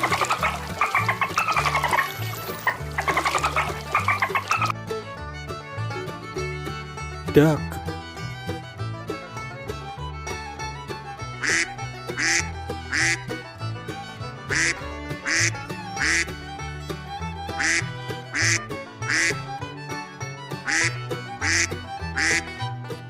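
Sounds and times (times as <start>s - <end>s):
duck quacking: 0.0s - 4.7s, 11.4s - 13.4s, 14.5s - 16.4s, 17.5s - 19.6s, 20.6s - 22.8s
background music with steady beat: 0.0s - 23.0s.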